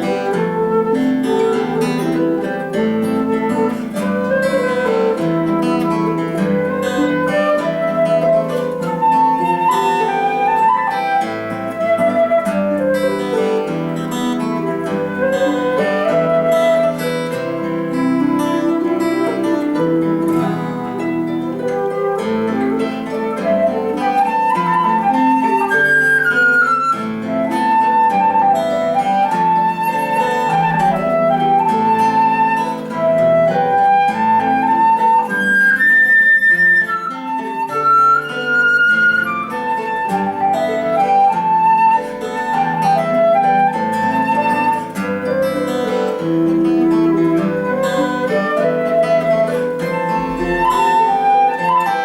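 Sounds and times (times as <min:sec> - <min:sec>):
flute melody: 0:00.0 - 0:52.0
plucked harp: 0:44.3 - 0:51.9.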